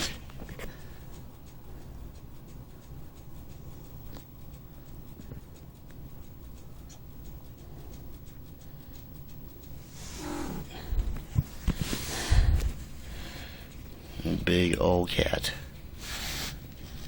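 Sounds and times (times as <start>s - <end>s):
cat breathing low rumble: 7.3s - 14.5s, 15.5s - 17.0s.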